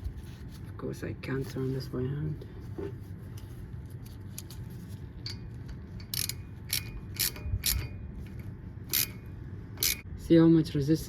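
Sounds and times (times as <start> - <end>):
wrench clicking: 6.0 - 8.0, 8.9 - 9.2, 9.8 - 10.0.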